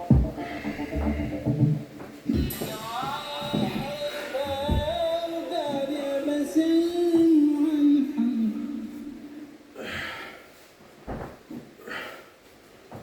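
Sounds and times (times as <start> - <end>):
person singing sliding notes: 0.0 - 9.6
breathy rush: 0.0 - 10.6.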